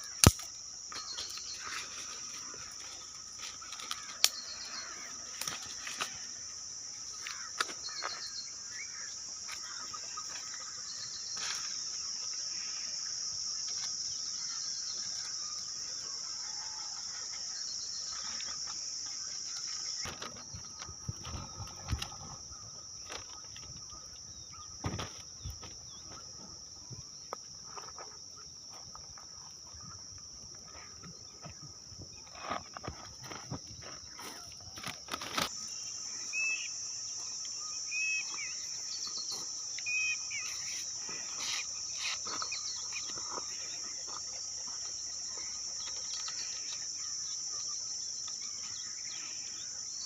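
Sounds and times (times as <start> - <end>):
insects shrilling: 0.0 - 50.0.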